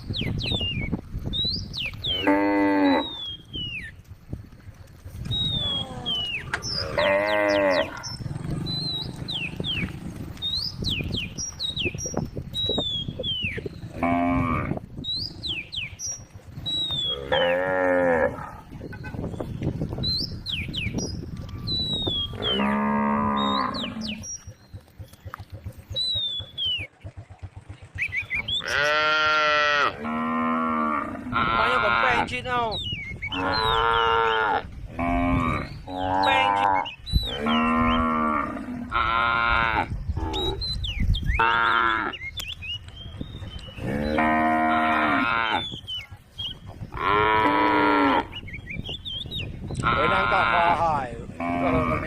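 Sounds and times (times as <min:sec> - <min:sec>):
cows mooing: 0:02.0 - 0:03.5, 0:05.5 - 0:10.4, 0:13.6 - 0:14.9, 0:16.9 - 0:18.8, 0:22.2 - 0:24.4, 0:28.5 - 0:32.3, 0:33.3 - 0:40.7, 0:41.4 - 0:42.2, 0:43.7 - 0:45.8, 0:46.9 - 0:48.4, 0:49.8 - 0:52.0.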